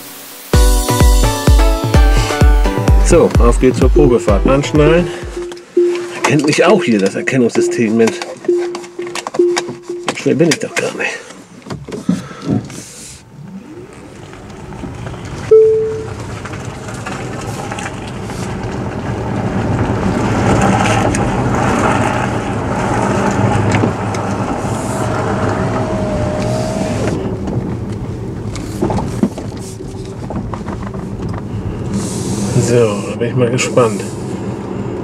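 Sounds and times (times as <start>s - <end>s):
tyre and road rumble: 3.0s - 35.0s
short loud beep: 4.7s - 10.3s, 15.5s - 16.2s.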